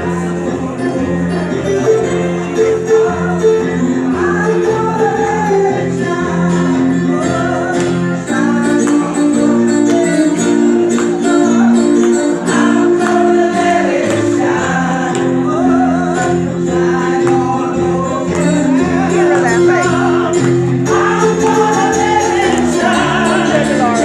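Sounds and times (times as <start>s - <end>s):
held chords: 0.0s - 24.0s
person singing: 0.0s - 24.0s.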